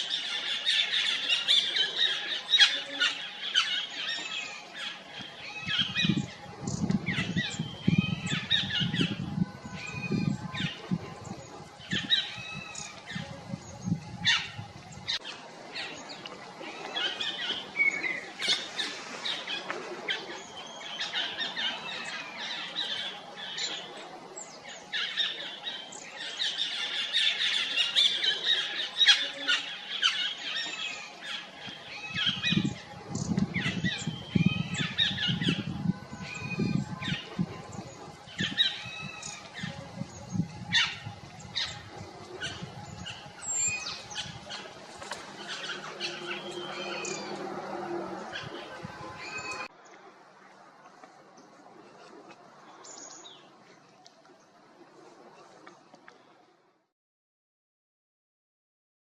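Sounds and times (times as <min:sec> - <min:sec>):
small birds chirping: 0:24.4 - 0:47.4.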